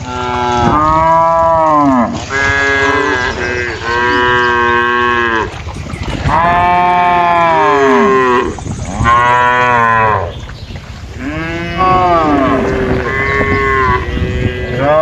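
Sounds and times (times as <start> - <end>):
cattle mooing: 0.0 - 5.5, 6.3 - 10.3, 11.2 - 15.0.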